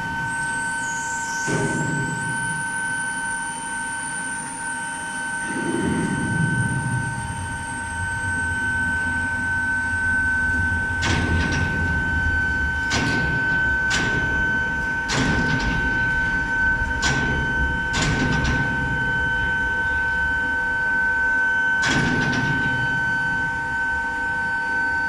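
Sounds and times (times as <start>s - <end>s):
induction furnace high-pitched whine: 0.0s - 25.0s
low rumble: 6.4s - 13.9s.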